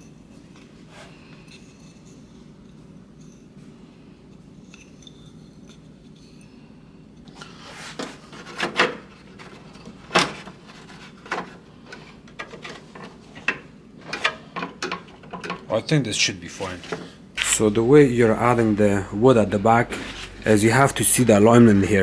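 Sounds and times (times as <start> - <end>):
hands rubbing plastic: 7.5 - 13.4
sharp clicks and knocks: 10.1 - 15.7.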